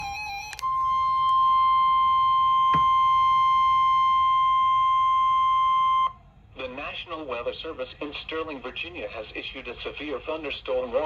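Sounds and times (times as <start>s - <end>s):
high-pitched alarm tone: 0.0s - 6.2s.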